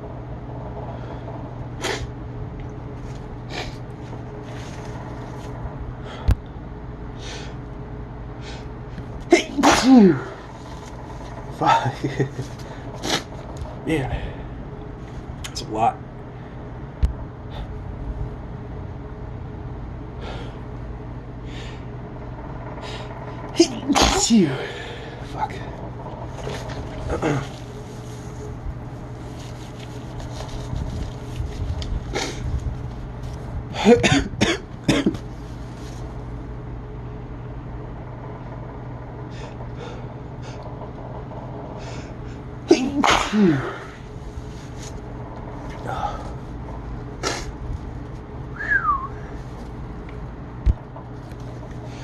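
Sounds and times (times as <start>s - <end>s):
steady low rumble: 0.0s - 52.0s
person sneezing: 1.8s - 2.1s, 9.3s - 10.4s, 13.0s - 13.3s, 23.6s - 24.8s, 33.8s - 35.2s, 42.7s - 43.9s, 47.2s - 47.6s.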